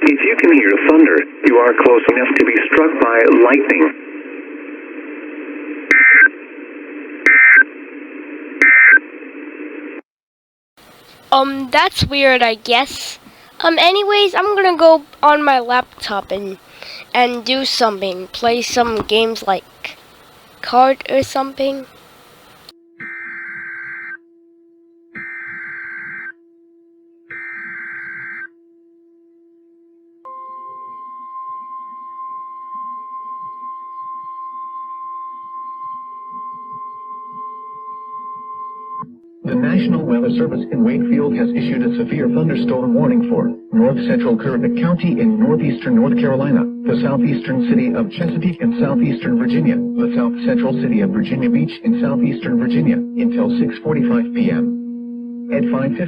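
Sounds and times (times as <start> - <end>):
radio hiss: 10.8 - 22.7, 45.5 - 54.8
steady low hum: 10.8 - 22.7, 39.5 - 56.0
data tone bursts: 10.9 - 22.7, 44.0 - 56.0.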